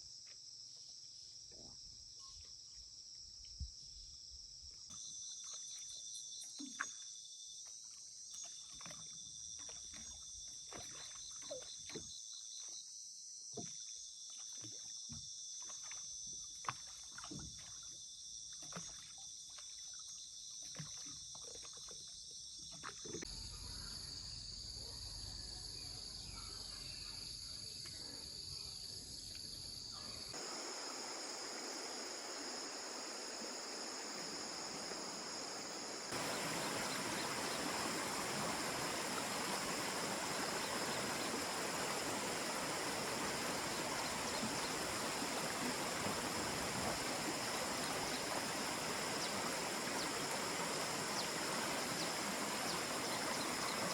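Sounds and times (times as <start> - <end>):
insects trilling: 21.8 - 53.9
running water rush: 30.3 - 53.9
knocks and splashes: 36.1 - 53.9.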